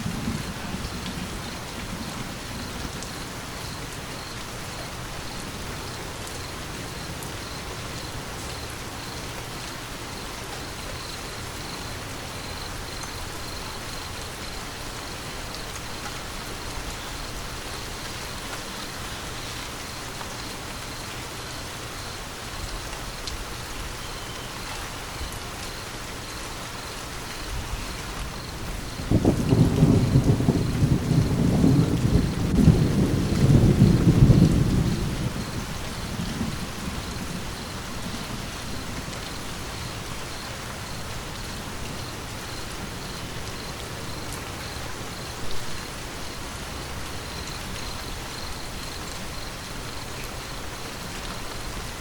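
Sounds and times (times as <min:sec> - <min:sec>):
thunder rumble: 0:00.0 - 0:04.2, 0:27.5 - 0:41.0
steady rain: 0:00.0 - 0:52.0
raindrop ticks: 0:00.3 - 0:03.2, 0:22.6 - 0:25.8.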